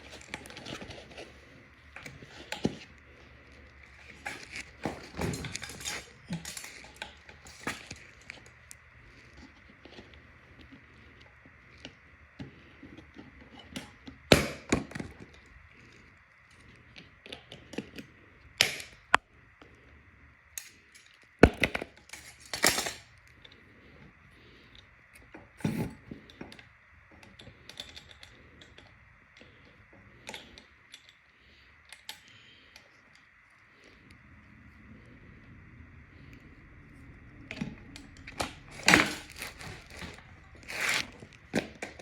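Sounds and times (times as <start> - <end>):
packaging rustling: 38.3 - 42.0.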